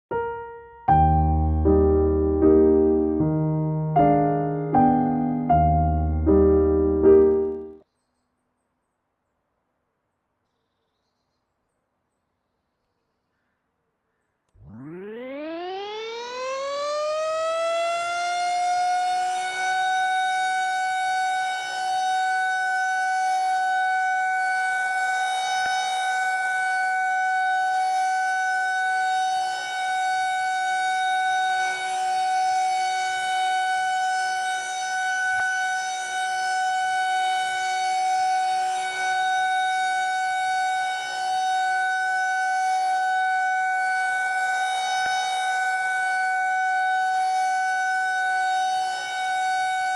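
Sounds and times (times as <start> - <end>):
rotating warning siren: 0.1 - 7.8, 14.6 - 49.9.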